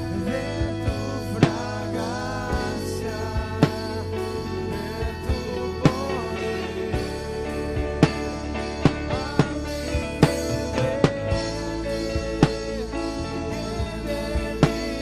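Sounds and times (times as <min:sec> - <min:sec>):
band playing worship music: 0:00.0 - 0:15.0
drum kit slow beat: 0:00.0 - 0:15.0.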